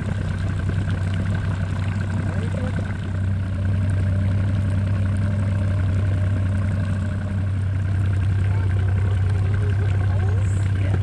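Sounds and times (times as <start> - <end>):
boat motor humming: 0.0 - 11.0.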